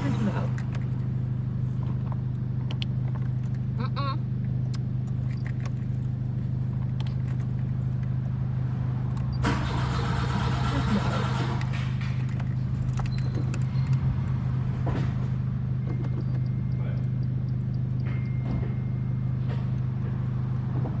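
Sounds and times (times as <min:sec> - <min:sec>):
engine cranking on starter: 0:09.4 - 0:12.0.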